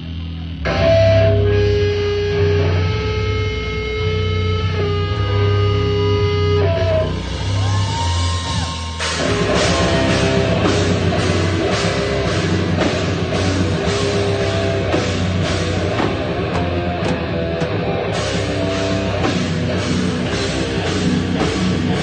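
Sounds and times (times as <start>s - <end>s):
bending guitar notes: 0.0s - 22.0s
rock band playing live: 0.5s - 22.0s
drum kit beat: 6.8s - 22.0s.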